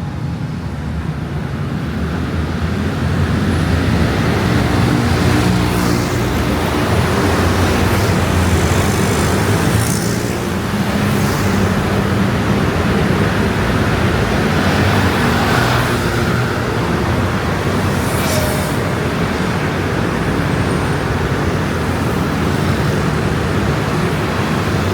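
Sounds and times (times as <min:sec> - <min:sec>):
motor scooters passing in traffic: 0:00.6 - 0:24.9.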